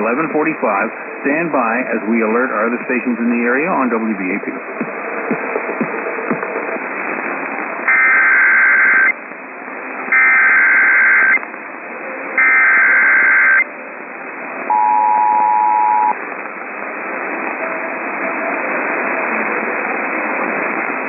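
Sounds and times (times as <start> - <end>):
radio hiss: 0.0 - 21.0
two-tone alert signal: 14.7 - 16.2.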